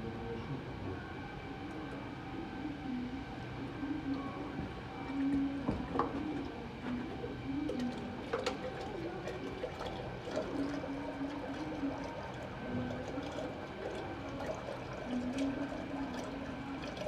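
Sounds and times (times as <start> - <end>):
oil draining into a pan: 7.7 - 17.0.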